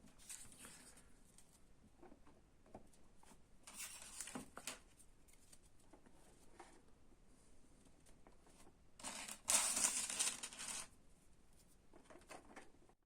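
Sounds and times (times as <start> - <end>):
plastic parts scraping: 9.0 - 10.9.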